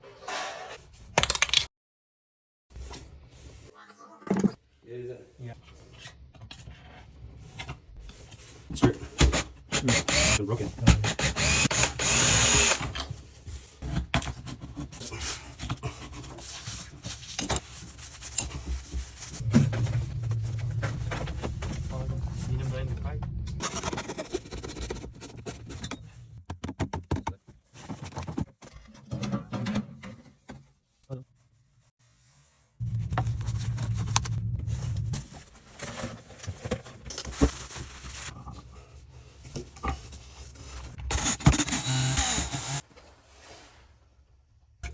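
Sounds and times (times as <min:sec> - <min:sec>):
power tool motor running: 0:09.8 - 0:10.4, 0:11.0 - 0:13.0, 0:41.1 - 0:42.8
low hum: 0:19.3 - 0:23.7, 0:32.8 - 0:35.8.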